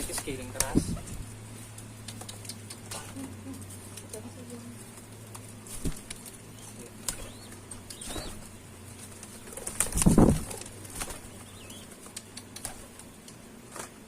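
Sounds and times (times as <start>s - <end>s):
small birds chirping: 0.0s - 13.4s
pigeon wings flapping: 4.8s - 6.4s, 7.0s - 14.0s.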